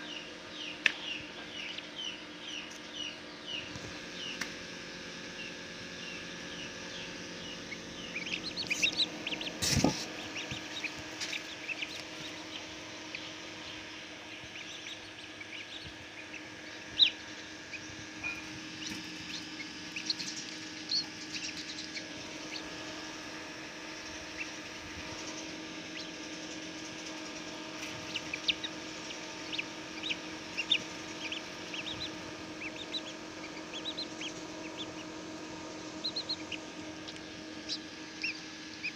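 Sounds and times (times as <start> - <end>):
chicks peeping: 0.0 - 38.9
incubator hum: 0.0 - 38.9.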